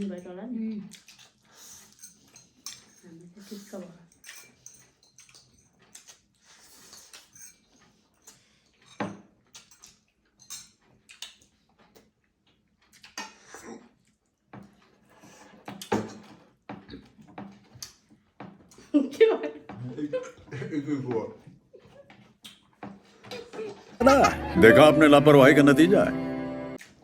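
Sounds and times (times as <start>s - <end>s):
cutlery clinking on plates: 1.0s - 3.1s, 4.1s - 11.5s, 12.9s - 13.7s, 15.4s - 18.8s.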